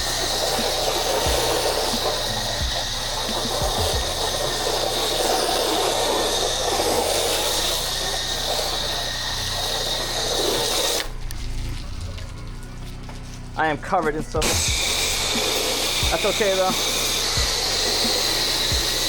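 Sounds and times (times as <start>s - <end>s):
pressure washer spray hissing: 0.0s - 13.6s, 14.4s - 19.0s
low engine hum: 11.1s - 15.4s.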